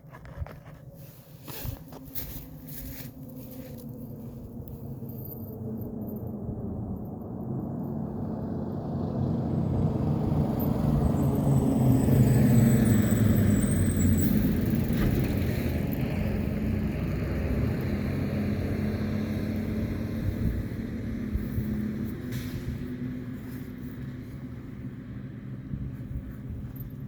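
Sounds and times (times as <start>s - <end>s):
vehicle driving past: 5.8s - 27.0s.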